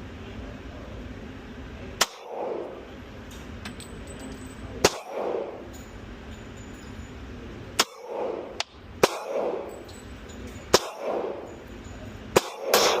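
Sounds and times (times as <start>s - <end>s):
pistol shots: 2.0s - 2.8s, 4.8s - 5.6s, 7.8s - 9.7s, 10.7s - 11.5s, 12.3s - 13.0s.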